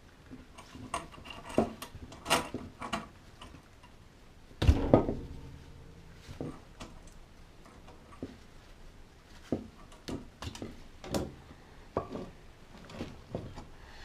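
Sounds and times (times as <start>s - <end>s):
tools and parts clicking and knocking: 0.5s - 4.0s, 9.5s - 11.4s.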